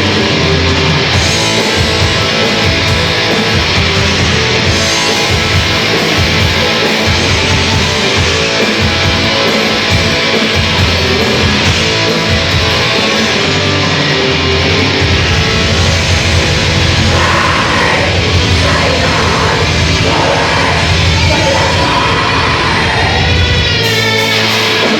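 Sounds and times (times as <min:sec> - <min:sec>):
heavy metal band playing: 0:00.0 - 0:24.9.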